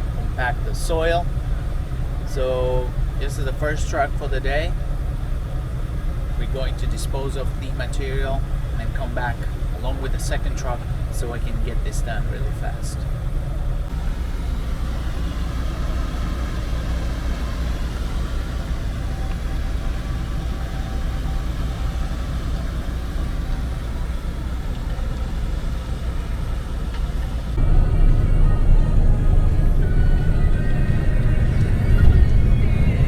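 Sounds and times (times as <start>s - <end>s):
truck engine rumbling: 0.0s - 33.0s.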